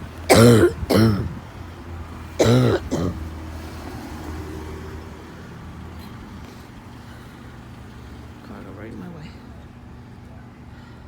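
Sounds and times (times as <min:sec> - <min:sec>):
person coughing hard: 0:00.3 - 0:01.4, 0:02.4 - 0:03.2.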